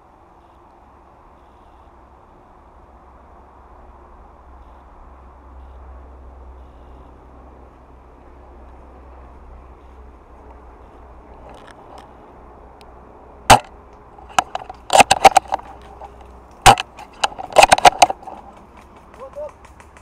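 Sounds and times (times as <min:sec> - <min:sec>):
sharp loud clicks and knocks: 0:13.5 - 0:13.7, 0:14.3 - 0:20.0.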